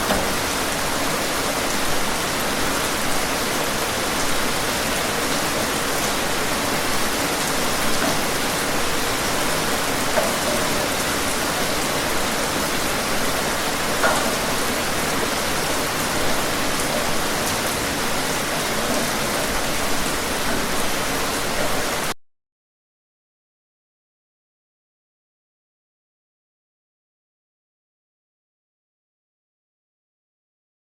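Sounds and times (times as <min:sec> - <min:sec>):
steady rain hiss: 0:00.0 - 0:22.1
raindrops pattering on surfaces: 0:00.0 - 0:22.2.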